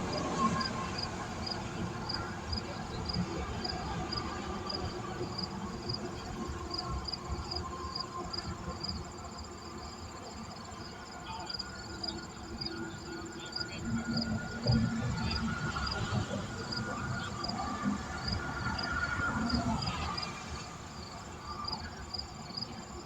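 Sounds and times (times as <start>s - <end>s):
insect chirping: 0.2s - 16.1s.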